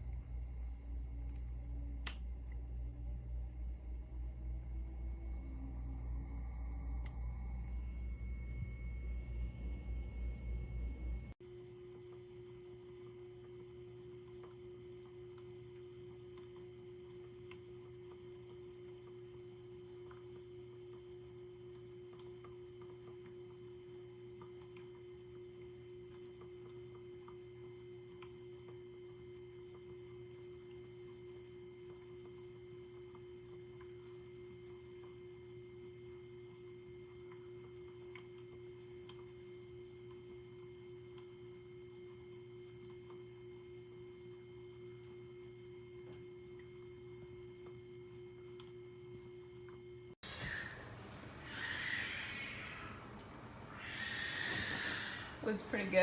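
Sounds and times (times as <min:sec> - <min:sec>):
lower hum: 0:00.0 - 0:11.4, 0:50.2 - 0:56.0
faint electrical hum: 0:00.0 - 0:56.0.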